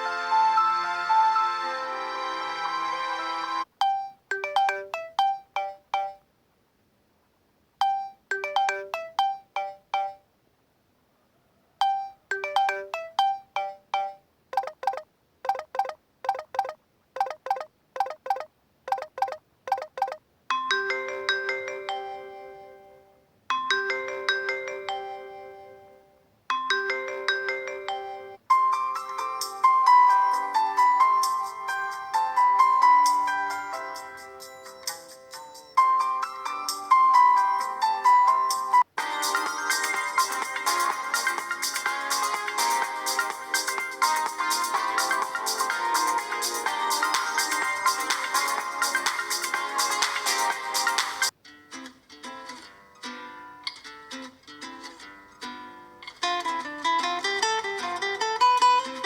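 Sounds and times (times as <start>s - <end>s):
held chord ringtone pattern: 3.8s - 6.2s, 7.8s - 10.2s, 11.8s - 23.0s, 39.0s - 51.3s
phone ringtone melody: 3.8s - 6.2s, 7.8s - 10.2s, 11.8s - 23.0s, 23.6s - 30.4s, 31.9s - 51.3s
rapid repeated ringtone notes: 3.8s - 6.2s, 7.8s - 10.2s, 11.8s - 22.5s, 33.0s - 51.3s.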